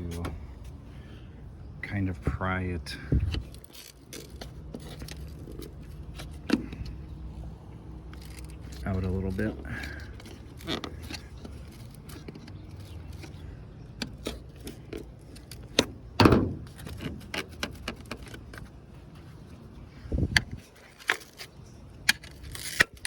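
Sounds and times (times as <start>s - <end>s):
steady low hum: 0.0s - 23.0s
car trim being pried loose: 3.2s - 7.4s, 8.1s - 18.8s.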